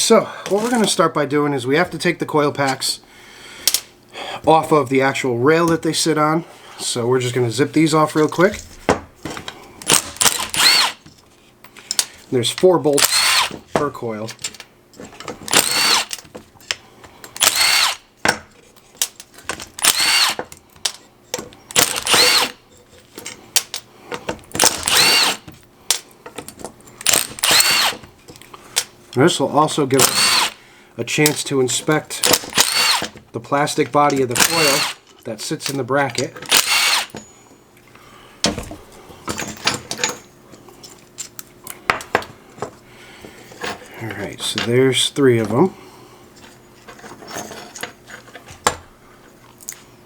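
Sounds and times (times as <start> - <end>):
power driver motor whine: 9.9 - 11.0, 13.0 - 13.6, 15.5 - 16.2, 17.4 - 18.0, 19.8 - 20.4, 21.7 - 22.6, 24.6 - 25.5, 27.0 - 28.0, 30.0 - 30.6, 32.3 - 33.1, 34.4 - 35.0, 36.4 - 37.1.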